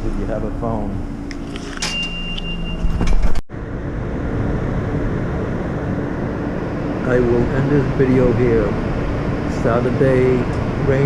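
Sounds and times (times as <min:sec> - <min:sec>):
high electronic beep: 0:01.8 - 0:03.2
subway train rumbling: 0:03.5 - 0:11.0.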